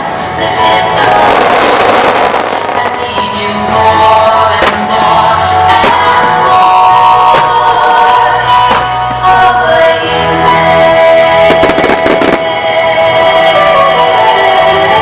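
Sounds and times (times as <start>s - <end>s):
music with singing: 0.0s - 15.0s
firework bursts cracking: 0.9s - 9.5s, 10.6s - 13.1s.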